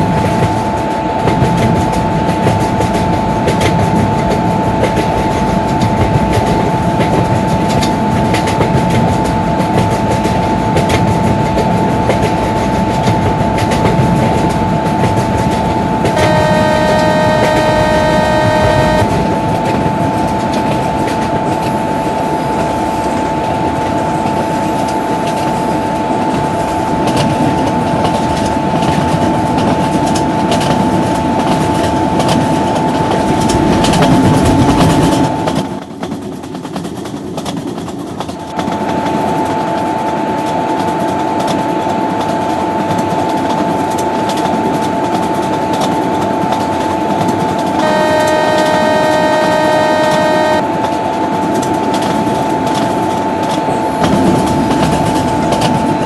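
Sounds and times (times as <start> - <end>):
train rolling along track: 0.0 - 56.0
two-note whine: 16.0 - 19.8, 47.8 - 50.7.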